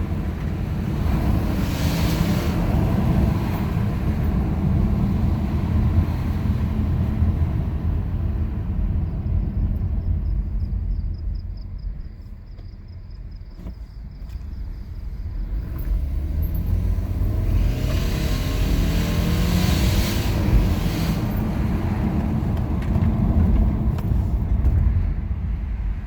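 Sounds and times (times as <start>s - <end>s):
car engine revving: 15.2s - 24.8s.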